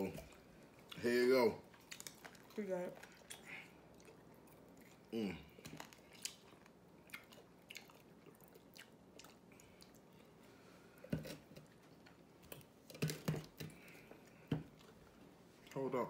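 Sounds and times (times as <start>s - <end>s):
chewing fried chicken: 0.0s - 10.4s.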